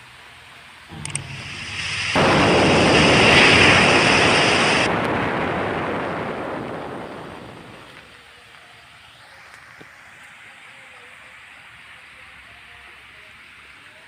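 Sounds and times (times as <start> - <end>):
loud rushing noise: 0.9 - 8.1.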